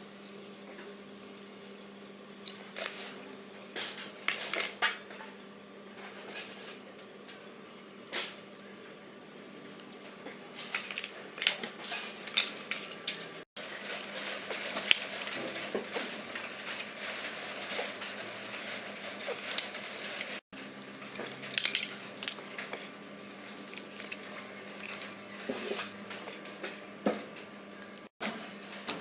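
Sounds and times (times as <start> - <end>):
metal tools clinking: 10.6 - 13.2, 21.0 - 26.3.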